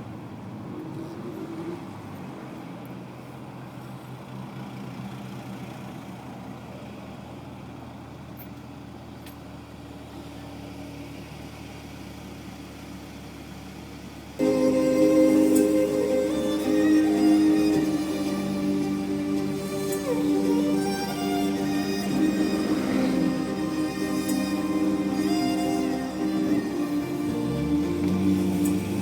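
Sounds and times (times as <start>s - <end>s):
car engine humming at low revs: 0.0s - 29.0s
loud music: 14.4s - 29.0s.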